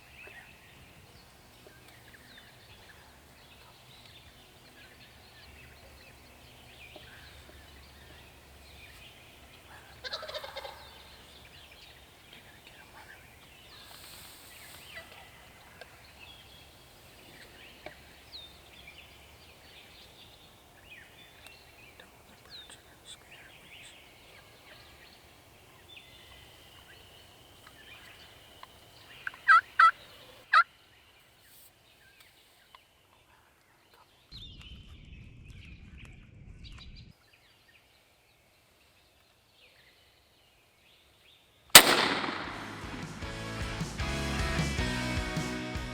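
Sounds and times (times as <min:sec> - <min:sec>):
faint songbird chirps: 0:00.0 - 0:41.9
turkey gobbling: 0:09.6 - 0:11.7, 0:29.2 - 0:30.6
loud short turkey calls: 0:09.7 - 0:11.7.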